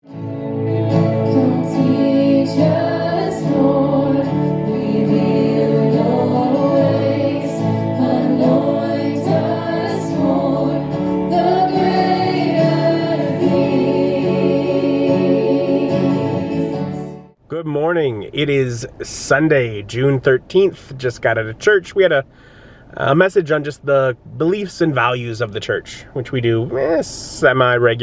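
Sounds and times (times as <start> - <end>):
voices singing over chords: 0.2 - 17.4.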